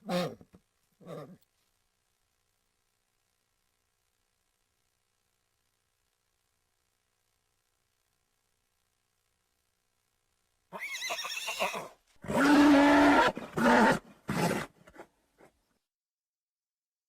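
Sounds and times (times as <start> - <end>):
horse whinnying: 10.7 - 14.7.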